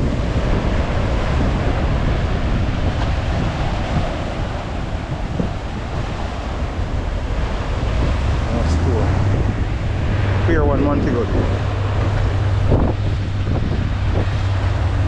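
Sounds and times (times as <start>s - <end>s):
sea surf on shore: 0.0s - 15.0s
wind buffeting microphone: 0.0s - 15.0s.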